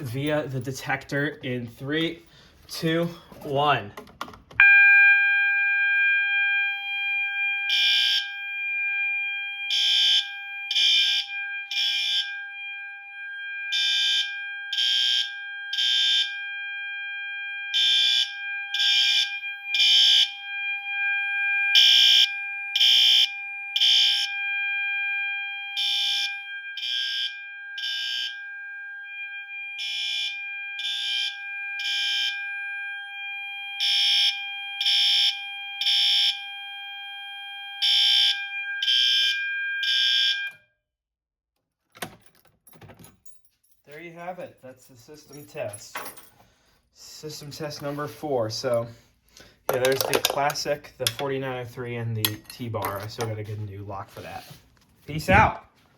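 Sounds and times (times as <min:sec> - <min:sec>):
fire alarm horn blasts: 0:04.6 - 0:40.7
steady fire alarm horn tone: 0:04.6 - 0:40.7.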